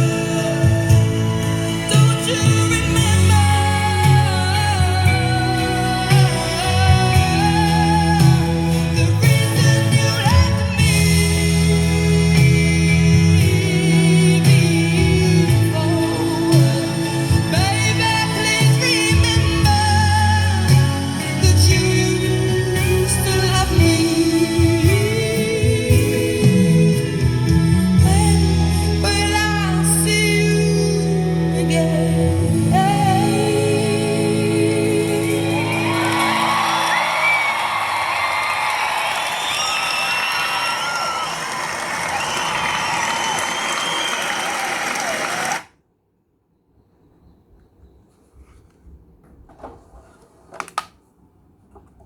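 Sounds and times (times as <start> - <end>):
live concert singing with chords: 0.0 - 38.2
song through stereo speakers: 0.0 - 43.5
audience cheering and whooping: 35.2 - 45.7.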